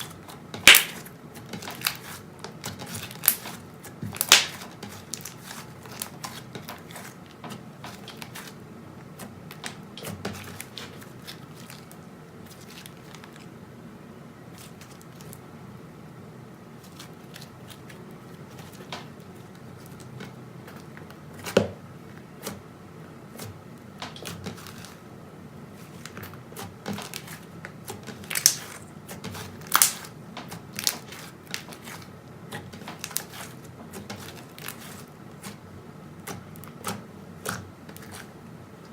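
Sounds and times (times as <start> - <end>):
slime popping: 0.6 - 1.1, 4.2 - 4.6
slime crackling and clicking: 0.6 - 3.6, 4.2 - 5.4, 27.0 - 28.8, 29.6 - 35.0.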